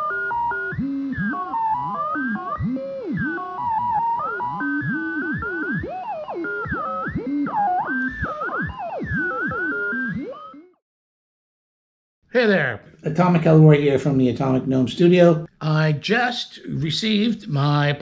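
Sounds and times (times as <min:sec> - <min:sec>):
synthesizer music with gliding notes: 0:00.0 - 0:10.8.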